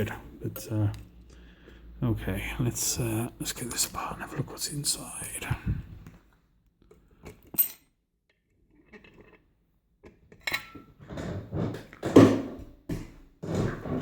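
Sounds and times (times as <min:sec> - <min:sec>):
metal handling and scraping: 0:10.0 - 0:12.2.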